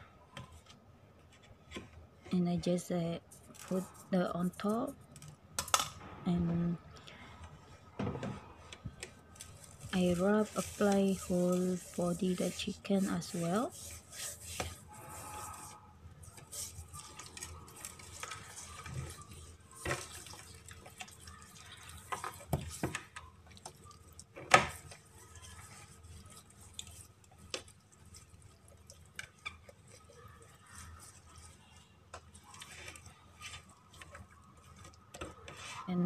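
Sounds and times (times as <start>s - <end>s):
hands rubbing raw chicken: 9.1s - 22.8s, 23.5s - 35.9s.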